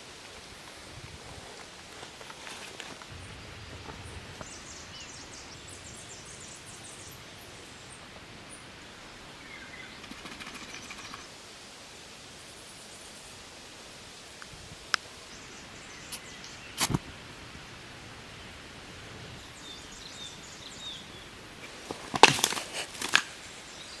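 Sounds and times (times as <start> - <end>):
outdoor background noise: 0.0 - 24.0
sharp snaps and clicks: 16.1 - 17.0.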